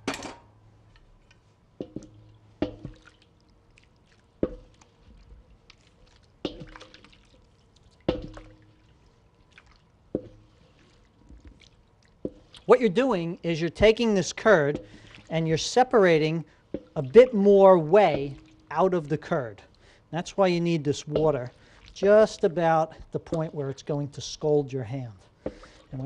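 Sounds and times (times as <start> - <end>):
wet squishing and dripping: 0.6 - 24.4, 25.2 - 26.0
sharp wet paddle strikes: 8.1 - 8.6.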